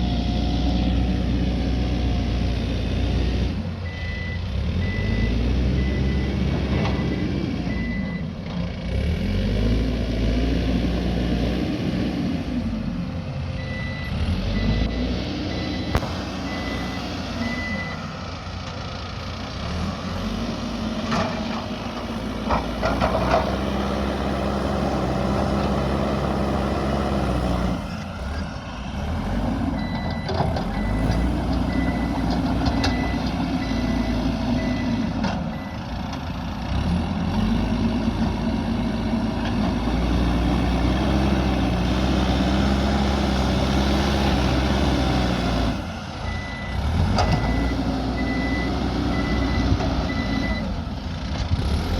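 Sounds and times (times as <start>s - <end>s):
diesel engine working: 0.0s - 51.9s
reversing alarm beeping: 3.8s - 8.3s, 13.6s - 18.1s, 29.8s - 35.8s, 46.2s - 50.8s.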